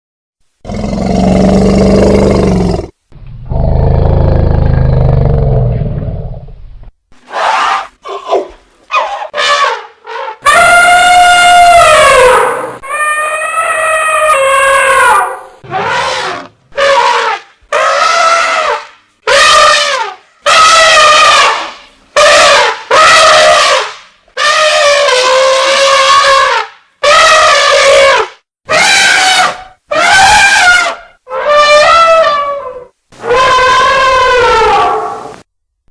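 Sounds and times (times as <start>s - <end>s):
elephant trumpeting: 7.3s - 35.4s.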